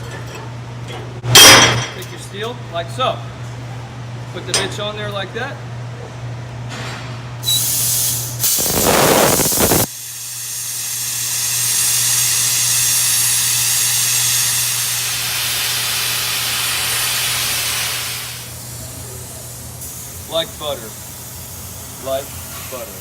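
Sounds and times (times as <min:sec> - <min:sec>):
low electrical hum: 0:00.0 - 0:23.0
air hiss from torch: 0:07.4 - 0:23.0
steady hiss of cooling air: 0:07.4 - 0:23.0
loud crackling arc: 0:07.6 - 0:10.0, 0:10.6 - 0:18.7.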